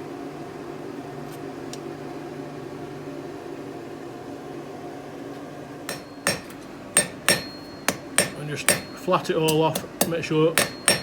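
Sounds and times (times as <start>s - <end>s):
electric fan hum: 0.0s - 11.0s.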